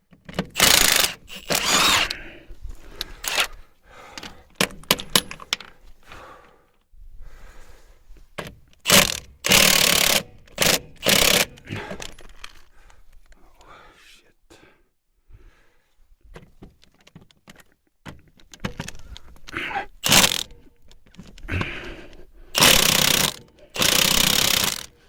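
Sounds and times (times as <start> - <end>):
metal parts clanking and scraping: 0.2 - 2.2, 4.2 - 5.8, 8.8 - 12.6, 16.8 - 21.7, 22.6 - 24.9
impact wrench hammering: 0.6 - 2.1, 8.9 - 11.5, 20.0 - 20.5, 22.6 - 24.9.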